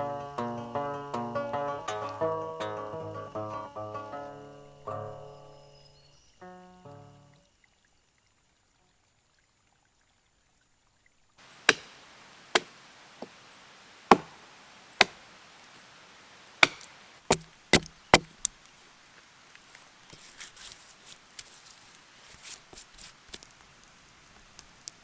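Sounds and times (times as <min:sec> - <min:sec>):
sharp chopping blows: 0:16.6 - 0:18.3.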